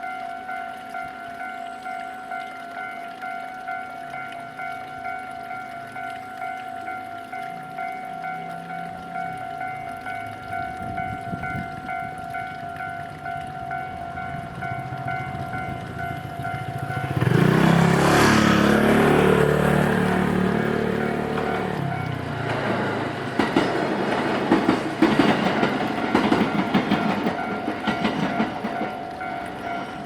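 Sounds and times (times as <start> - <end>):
crossing warning bell ringing: 0.0 - 30.0
electric train passing: 0.8 - 30.0
wheels clacking over rail joints: 8.3 - 30.0.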